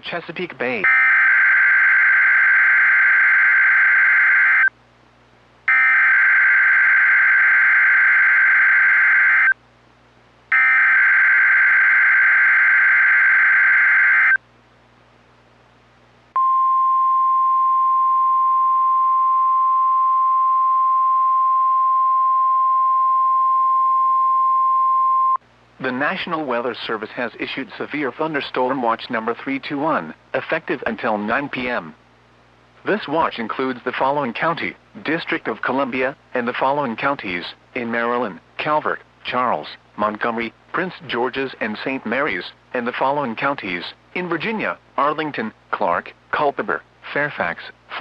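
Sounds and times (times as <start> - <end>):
steady warning alarm tone: 0.8 - 4.7, 5.7 - 9.6, 10.5 - 14.4.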